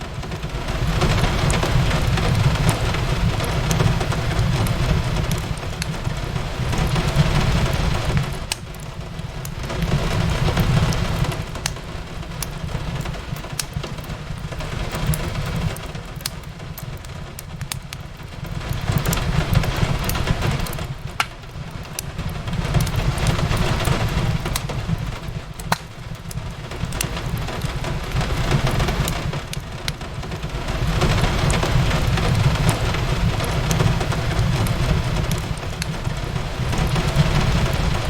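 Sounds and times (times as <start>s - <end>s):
steady rain: 0.0s - 38.0s
wood fire crackling: 0.0s - 38.0s
sharp pops: 25.6s - 25.9s.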